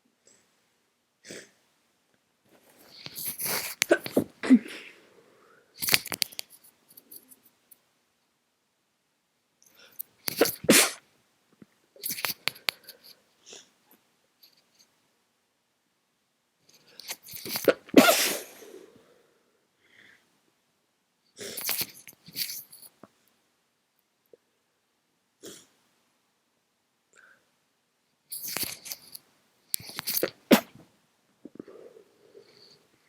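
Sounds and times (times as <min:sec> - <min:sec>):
person sneezing: 0:03.1 - 0:05.0, 0:10.4 - 0:11.0, 0:17.5 - 0:18.8, 0:29.8 - 0:30.8
breathy sounds: 0:31.4 - 0:33.0.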